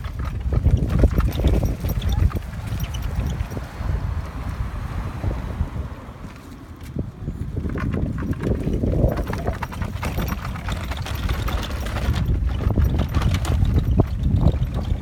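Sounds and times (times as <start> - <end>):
wind buffeting microphone: 0.0 - 15.0
irregular clicks and knocks: 7.7 - 15.0.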